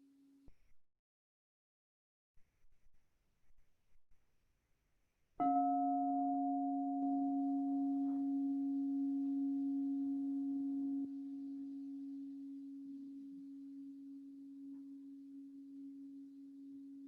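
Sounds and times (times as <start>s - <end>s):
singing bowl ringing: 5.4s - 17.0s.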